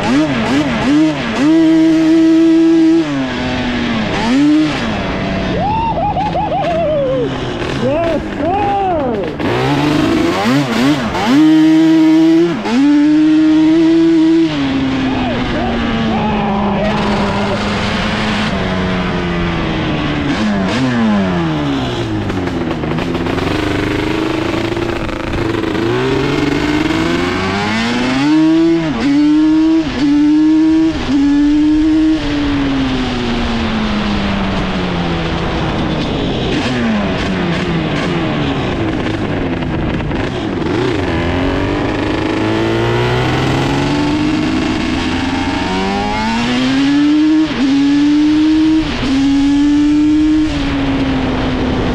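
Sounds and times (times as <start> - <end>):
two-stroke engine revving: 0.0 - 5.6, 7.3 - 51.9.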